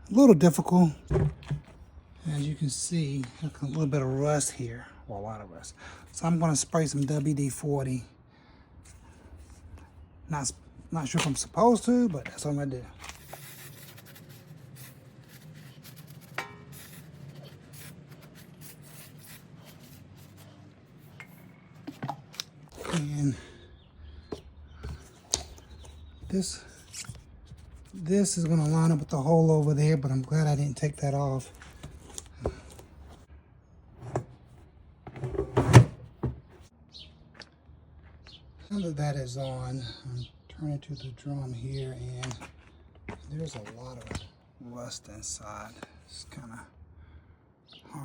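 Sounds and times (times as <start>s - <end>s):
hands rubbing machine parts: 12.2s - 23.0s.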